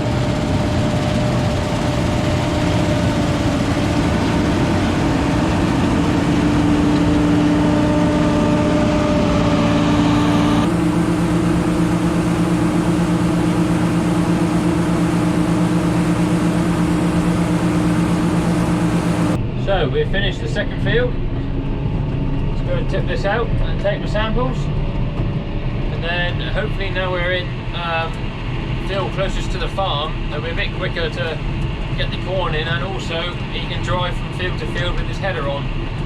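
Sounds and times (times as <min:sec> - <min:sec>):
heavy tractor engine running: 0:00.0 - 0:19.5.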